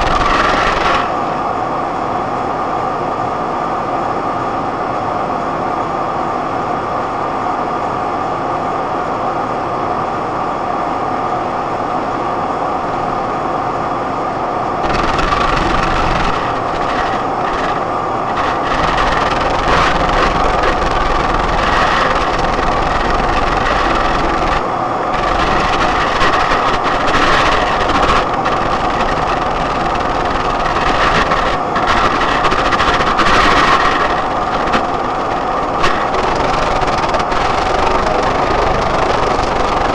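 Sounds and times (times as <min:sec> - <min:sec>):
rattling and crackling: 0:00.0 - 0:01.2, 0:14.8 - 0:39.9.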